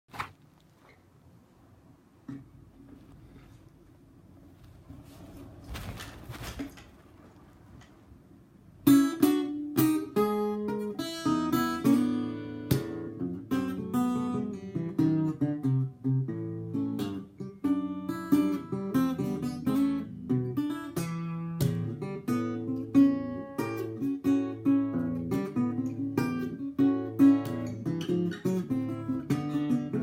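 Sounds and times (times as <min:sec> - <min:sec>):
brief rustle: 0:04.6 - 0:08.0
acoustic guitar strummed: 0:08.8 - 0:30.0.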